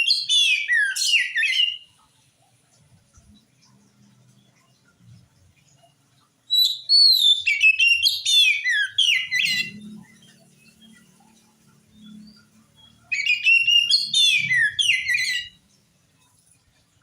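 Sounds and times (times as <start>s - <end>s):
bird singing whistled notes: 0.0s - 2.0s, 6.4s - 15.7s.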